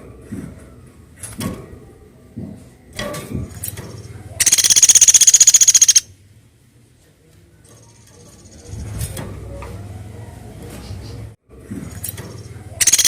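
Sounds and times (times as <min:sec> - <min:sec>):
woodpecker rattling call: 0:04.4 - 0:06.1, 0:12.8 - 0:13.0.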